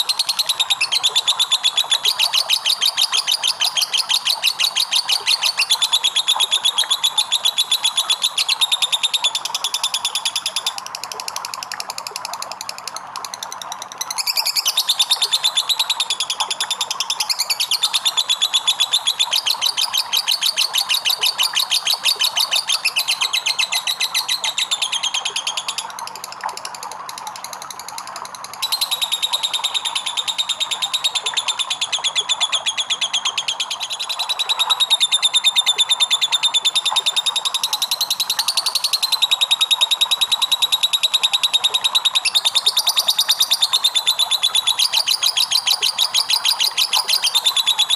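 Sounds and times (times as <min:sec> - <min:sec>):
bird chattering trill: 0:14.1 - 0:25.8, 0:28.6 - 0:39.1.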